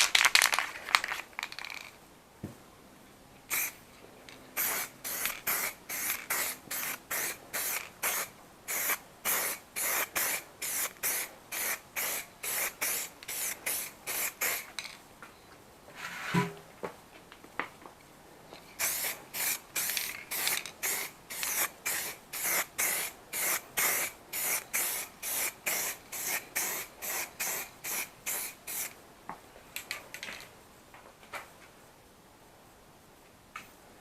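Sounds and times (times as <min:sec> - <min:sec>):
aerosol can spraying bursts: 0:03.5 - 0:03.8, 0:04.6 - 0:14.7, 0:18.8 - 0:28.9.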